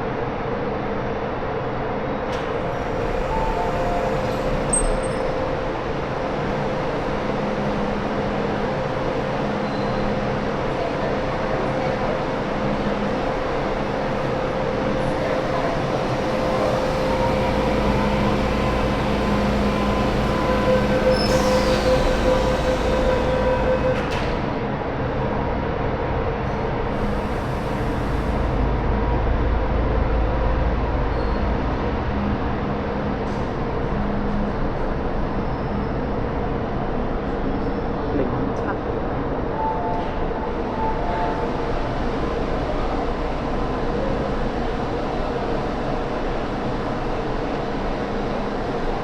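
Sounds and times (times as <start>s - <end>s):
electric train rumble and hum: 0.0s - 49.0s
high wheel squeals: 2.7s - 5.8s, 16.4s - 24.4s.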